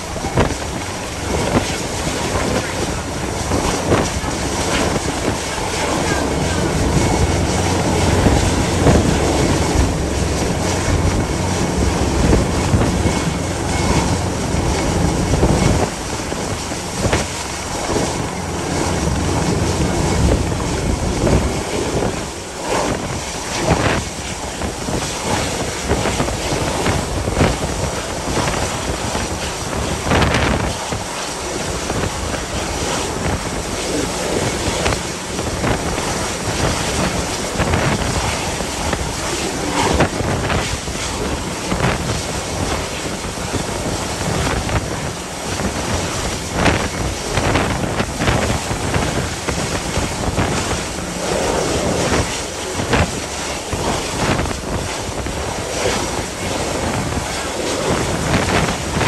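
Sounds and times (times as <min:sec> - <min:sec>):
rough sea rushing: 0:00.0 - 0:59.0
wind buffeting microphone: 0:00.0 - 0:59.0.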